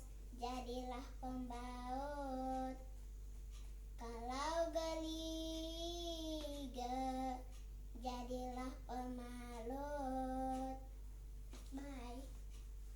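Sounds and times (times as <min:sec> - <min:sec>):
low electrical hum: 0:00.0 - 0:12.9
child singing: 0:00.3 - 0:02.9, 0:04.0 - 0:10.9, 0:11.7 - 0:12.4.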